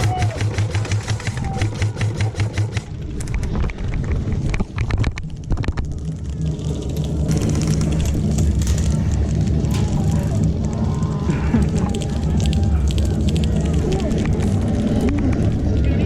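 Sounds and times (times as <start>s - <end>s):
airsoft rifles firing: 0.0s - 3.0s
low rumble: 2.8s - 16.0s.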